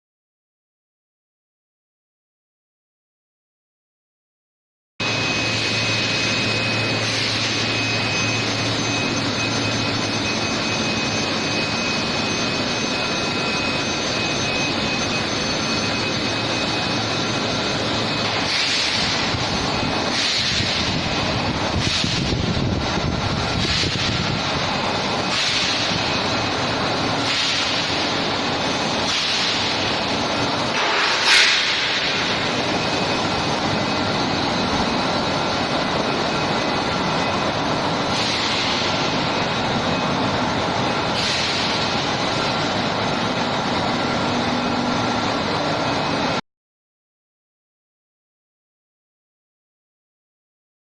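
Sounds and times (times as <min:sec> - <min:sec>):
rising squeal: 0:05.0 - 0:21.7, 0:22.8 - 0:38.2
high machine whine: 0:05.0 - 0:46.4.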